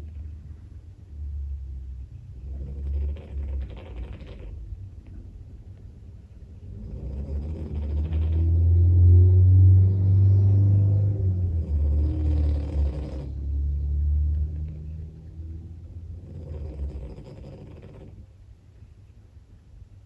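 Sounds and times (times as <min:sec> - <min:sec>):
dog snoring: 0:02.4 - 0:04.7, 0:06.6 - 0:14.0, 0:16.1 - 0:18.3
car passing outside: 0:06.6 - 0:17.0.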